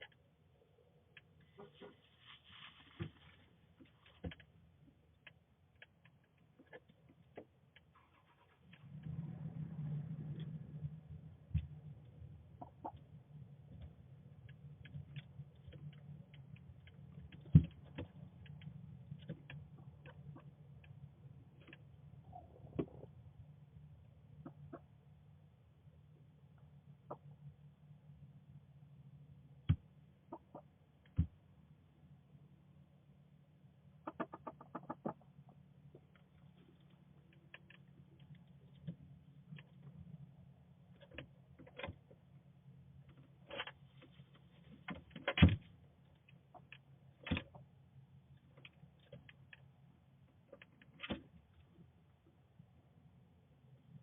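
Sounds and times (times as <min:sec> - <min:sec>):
small irregular clicks: 0:03.8 - 0:09.2, 0:10.3 - 0:23.2, 0:48.3 - 0:52.4
chicken clicking clucks: 0:12.5 - 0:13.1, 0:24.4 - 0:24.9, 0:30.2 - 0:30.7, 0:34.0 - 0:38.9.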